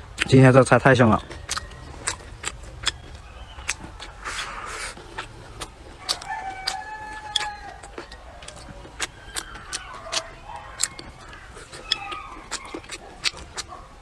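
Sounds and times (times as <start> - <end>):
rooster crowing: 5.9 - 12.9.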